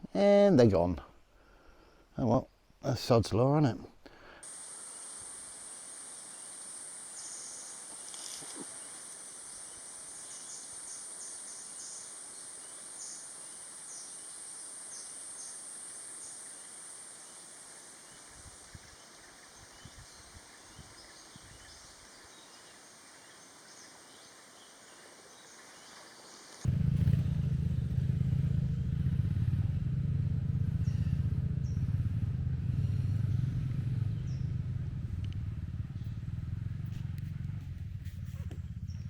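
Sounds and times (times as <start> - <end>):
insect hum: 0.0 - 39.0
faint bird chirps: 6.0 - 26.6
vehicle rumbling: 26.6 - 39.0.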